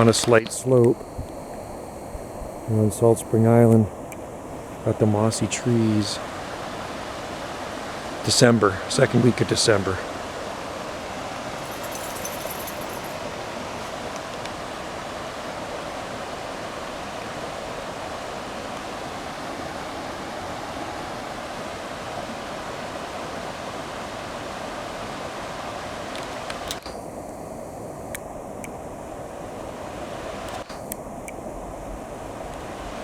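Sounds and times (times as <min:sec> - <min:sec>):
creek rushing: 0:02.7 - 0:26.5.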